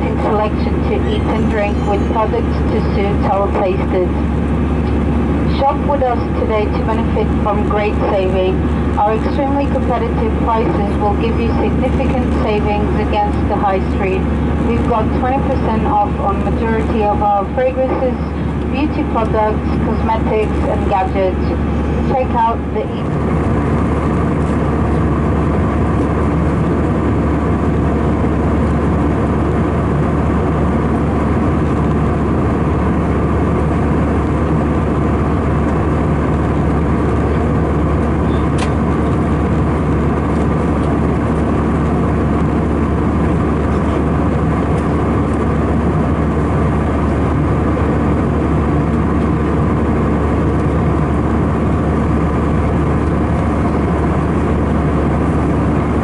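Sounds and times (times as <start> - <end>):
air rushing along fuselage: 0.0 - 56.0
aircraft engine hum: 0.0 - 56.0.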